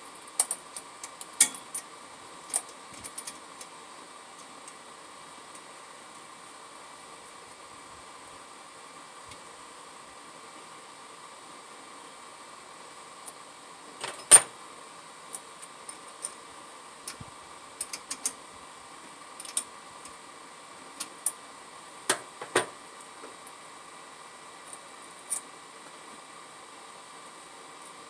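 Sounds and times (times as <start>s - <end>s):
steady hiss: 0.0s - 28.0s
metallic clicks of hand tools: 0.4s - 1.9s.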